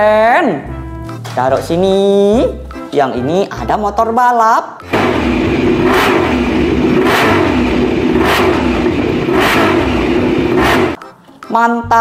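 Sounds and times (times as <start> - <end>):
racing motorcycle engine revving: 4.9 - 11.0.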